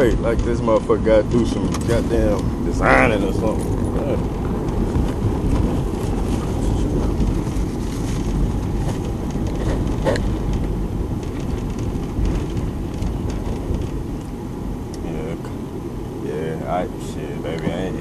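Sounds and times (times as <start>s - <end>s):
road and engine noise inside vehicle: 0.0s - 18.0s.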